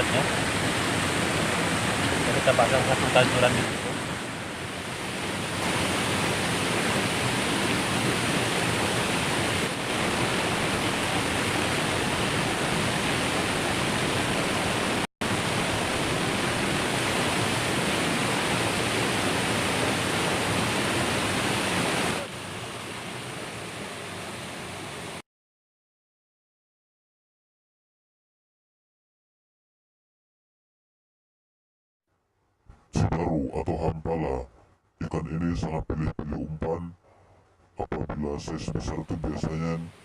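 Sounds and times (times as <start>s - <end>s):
waterfall rushing: 0.0s - 25.2s.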